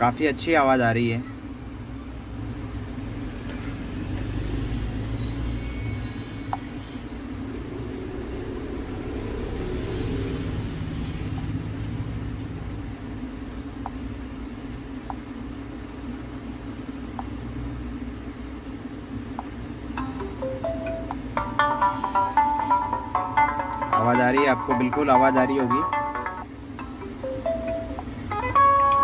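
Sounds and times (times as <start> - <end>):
phone ringtone through loudspeaker: 20.0 - 29.0.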